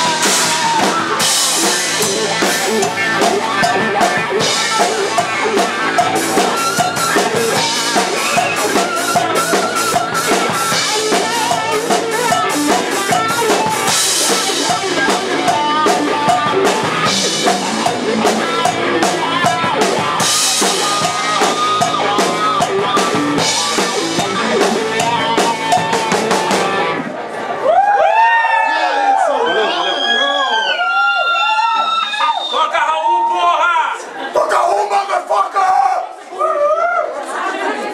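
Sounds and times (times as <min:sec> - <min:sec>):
rock band playing: 0:00.0 - 0:27.7.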